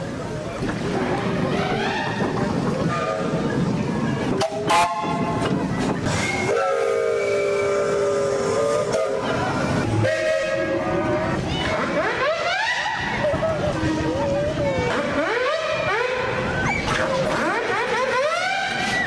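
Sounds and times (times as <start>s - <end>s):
train horn blast: 4.4s - 5.4s, 6.4s - 11.4s.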